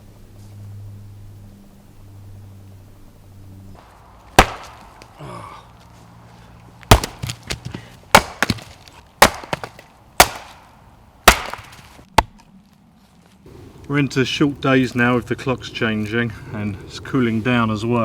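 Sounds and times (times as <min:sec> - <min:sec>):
low steady hum: 0:00.0 - 0:17.1
firewood chopping: 0:04.2 - 0:05.6, 0:06.8 - 0:12.5.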